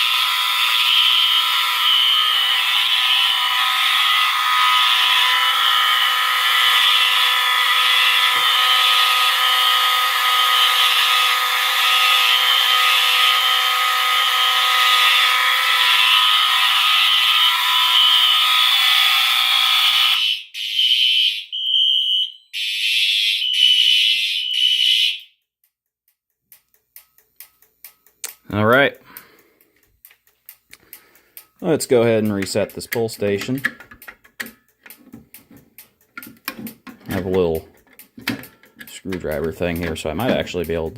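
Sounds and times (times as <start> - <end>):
fire alarm sounders: 0.0 - 25.4.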